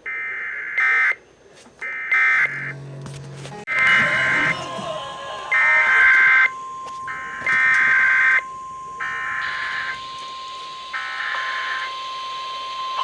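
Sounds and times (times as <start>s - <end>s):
steady high tone: 2.4s - 11.9s.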